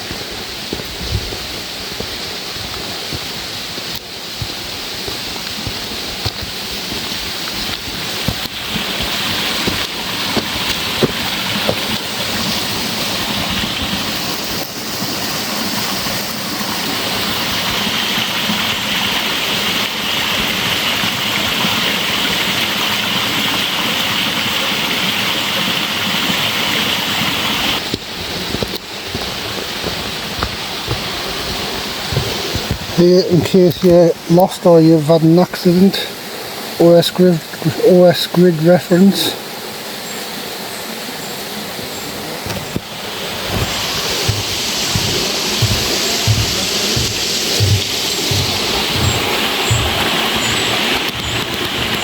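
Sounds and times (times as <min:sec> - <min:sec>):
stream rushing over rocks: 0:00.0 - 0:52.0.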